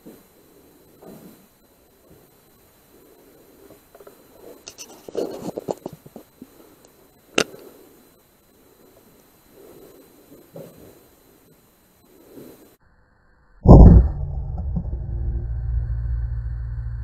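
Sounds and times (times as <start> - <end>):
scratchy clattering and scraping: 4.0 - 6.3.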